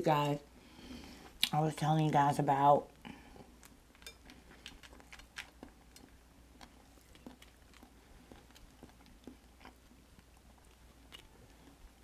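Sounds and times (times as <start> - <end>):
chewing clicks and smacks: 3.6 - 12.0.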